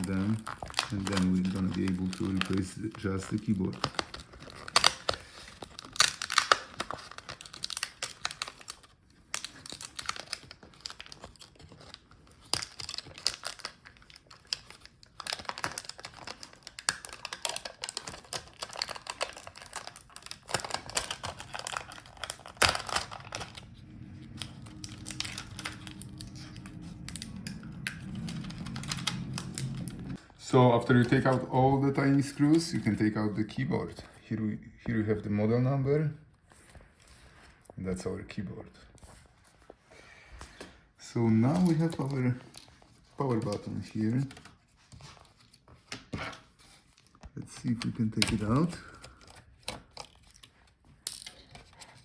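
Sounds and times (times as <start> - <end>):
steady low hum: 20.5 - 35.0.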